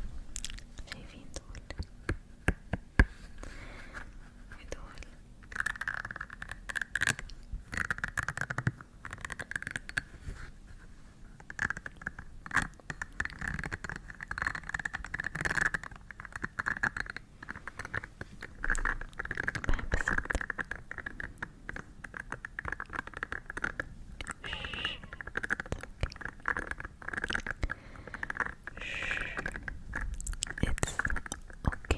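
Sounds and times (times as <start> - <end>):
scratching and scraping clicks: 4.6 - 10.1, 11.4 - 31.9.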